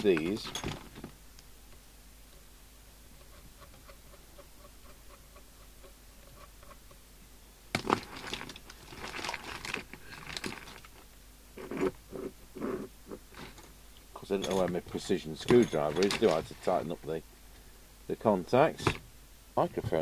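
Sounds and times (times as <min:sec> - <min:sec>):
rustling and scraping: 0:03.1 - 0:07.0, 0:07.7 - 0:17.1.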